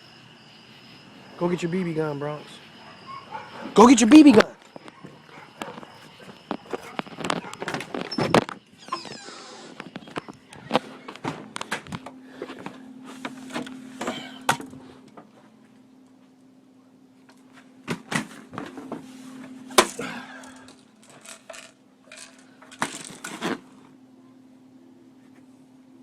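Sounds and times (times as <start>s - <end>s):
steady low hum: 0.0s - 26.0s
objects knocking and clattering: 19.7s - 23.6s.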